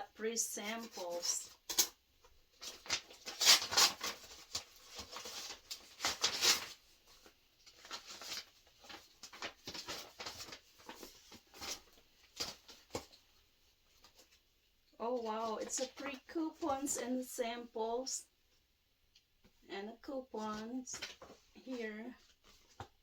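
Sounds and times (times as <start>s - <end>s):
paper and plastic packets crinkling: 0.8s - 14.4s, 15.1s - 17.0s, 20.5s - 23.0s.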